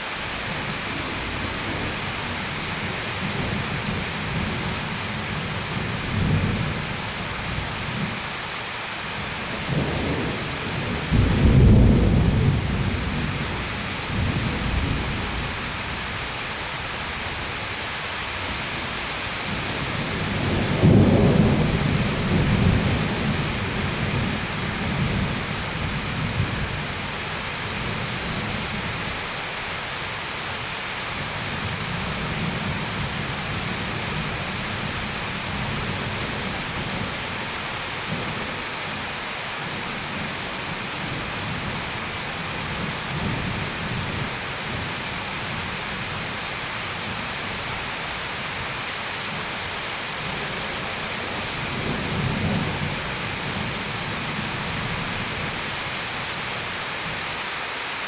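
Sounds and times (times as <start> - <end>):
heavy rain: 0.0 - 58.0
rolling thunder: 9.6 - 15.5, 19.7 - 26.8.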